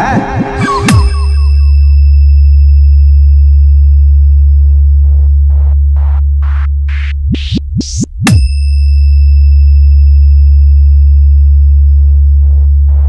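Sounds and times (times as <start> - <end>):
bass test tone: 0.6 - 13.0
sharp electronic hit: 0.9 - 2.6
falling bass sweeps: 9.3 - 13.0.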